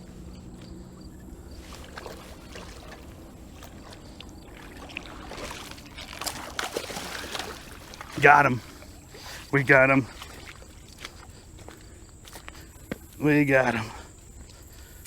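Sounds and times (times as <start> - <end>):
low steady rumble: 0.0 - 9.9
water sloshing and splashing: 0.0 - 15.0.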